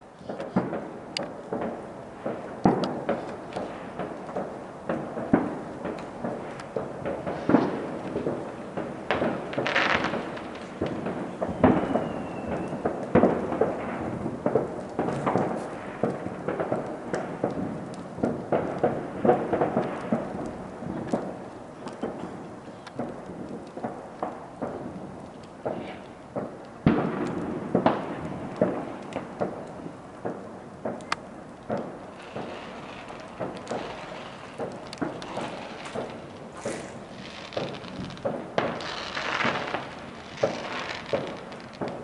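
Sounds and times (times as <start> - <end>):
fireworks bangs and booms: 0.0 - 42.0
faint short whistle: 11.5 - 12.8.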